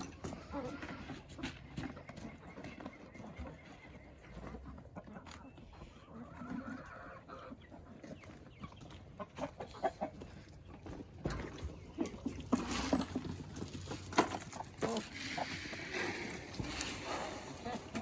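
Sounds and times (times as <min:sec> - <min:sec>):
chickens clucking: 0:00.0 - 0:18.0.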